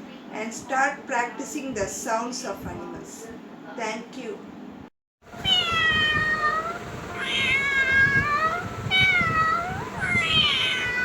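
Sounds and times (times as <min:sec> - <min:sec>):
cat meowing: 0:05.4 - 0:11.0.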